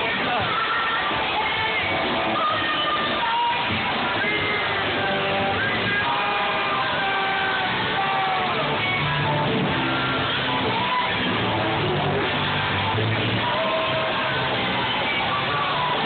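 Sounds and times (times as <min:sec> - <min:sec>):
crowded bar din: 0:00.0 - 0:16.0
live music with singing: 0:00.0 - 0:16.0.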